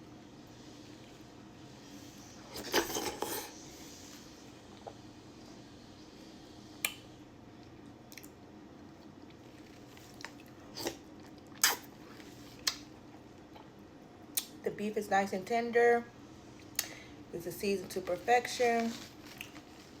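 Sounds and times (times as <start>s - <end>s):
person chewing: 7.6s - 13.2s, 19.2s - 19.9s
wet mouth clicks and smacks: 8.1s - 8.4s, 10.2s - 11.9s, 12.6s - 12.9s, 16.7s - 17.0s.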